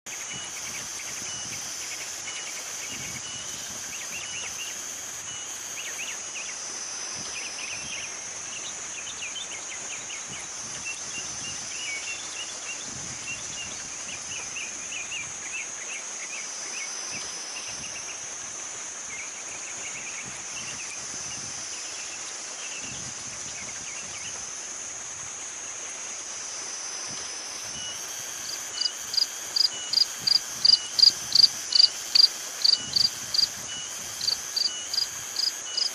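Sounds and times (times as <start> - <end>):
high-pitched insect drone: 0.1 - 9.8, 20.3 - 35.9
pulsing insect call: 0.1 - 35.9.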